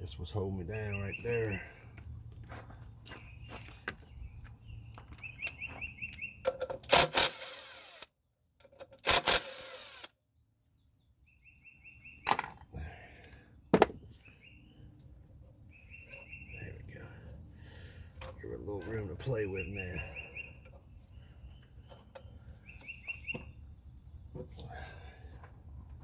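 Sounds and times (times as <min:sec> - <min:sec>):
tools clanking on engine: 0:12.3 - 0:12.6.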